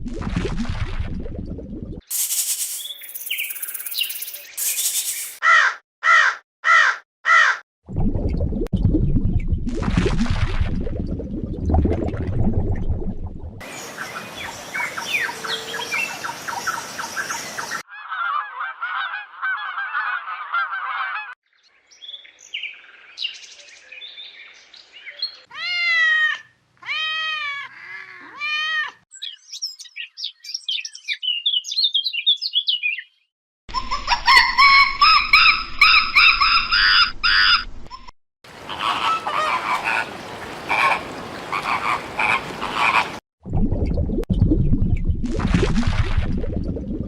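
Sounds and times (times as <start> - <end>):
bird chirping: 2.1 - 5.4, 13.7 - 17.8, 29.1 - 33.9
high birdsong: 2.1 - 5.7, 13.6 - 17.8, 29.1 - 33.3
harsh animal call: 38.6 - 43.2
animal chattering calls: 38.7 - 40.1, 40.7 - 43.2.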